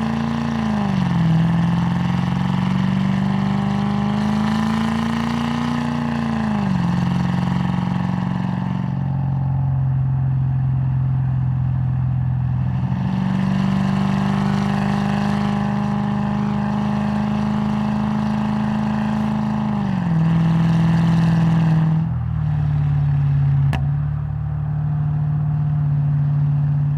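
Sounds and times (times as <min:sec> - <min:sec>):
car engine revving: 0:00.0 - 0:09.4, 0:12.4 - 0:26.9.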